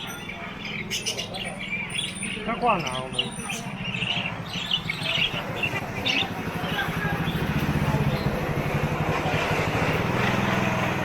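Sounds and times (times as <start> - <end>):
bird chirps: 0.0 - 8.5
street background noise: 0.0 - 11.0
vehicle engine humming: 3.7 - 11.0.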